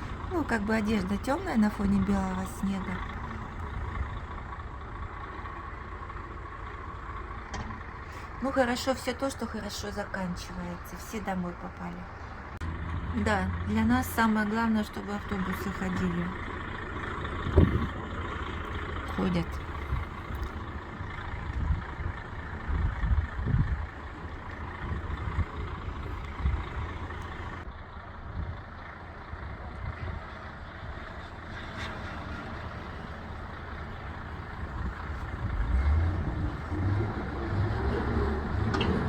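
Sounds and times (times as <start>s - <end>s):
traffic rumble of engines and tyres: 0.0s - 39.0s
vehicle engine passing close: 12.0s - 39.0s.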